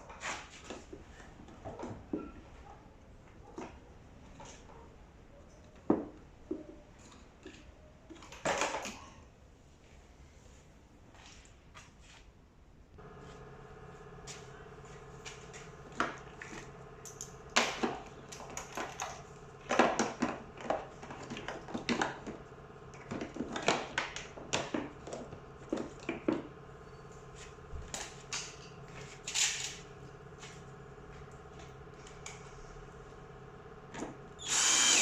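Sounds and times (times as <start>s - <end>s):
steady background hum: 9.1s - 35.0s.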